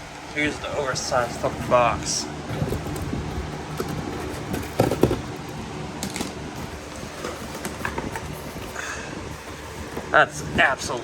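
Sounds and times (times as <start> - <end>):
steady low hum: 0.0 - 11.0
cardboard box knocks and scrapes: 1.0 - 10.8.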